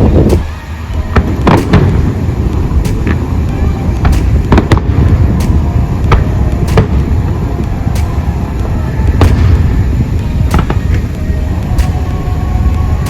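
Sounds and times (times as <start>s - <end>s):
fireworks bangs: 0.0s - 12.3s
steady low rumble: 0.0s - 13.0s.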